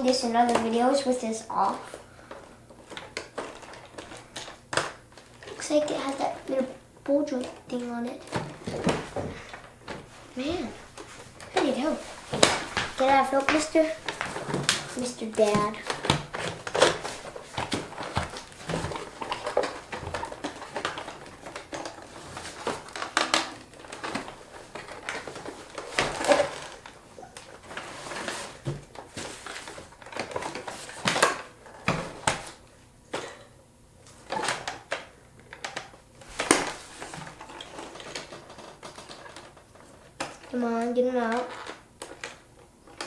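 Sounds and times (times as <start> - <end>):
sharp plastic knocks: 8.2 - 26.9.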